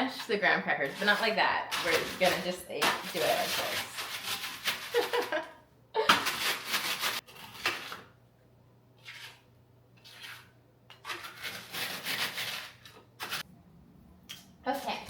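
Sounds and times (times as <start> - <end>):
rolling pin crushing crackers: 6.1 - 8.2.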